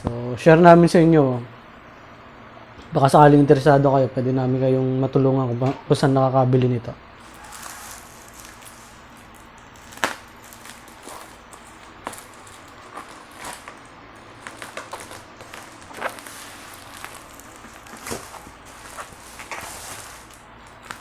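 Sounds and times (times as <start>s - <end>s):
parcel packaging crackling: 7.2s - 21.0s.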